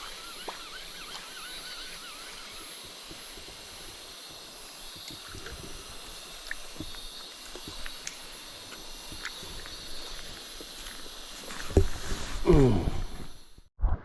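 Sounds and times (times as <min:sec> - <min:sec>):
warbling bird call: 0:00.0 - 0:02.8
stream hissing: 0:00.0 - 0:13.6
insect drone: 0:00.0 - 0:13.7.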